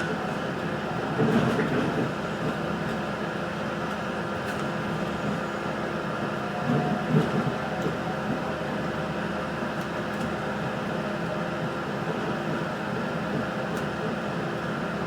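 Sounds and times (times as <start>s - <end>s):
railcar bumps: 0.0s - 5.5s, 6.2s - 8.7s
railcar running noise: 0.0s - 15.0s.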